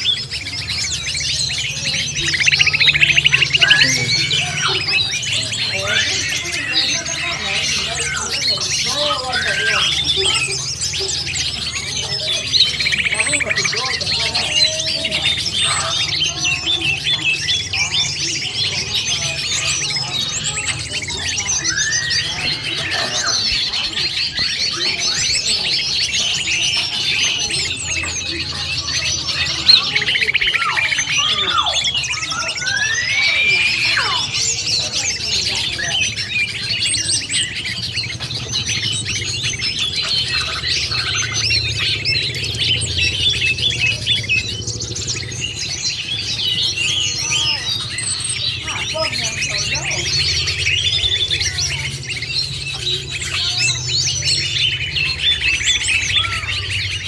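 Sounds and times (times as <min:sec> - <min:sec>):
slurred rising and falling bird whistles: 0:00.0 - 0:07.2, 0:21.2 - 0:25.4, 0:29.4 - 0:48.6
small birds chirping and twittering: 0:00.0 - 0:57.0.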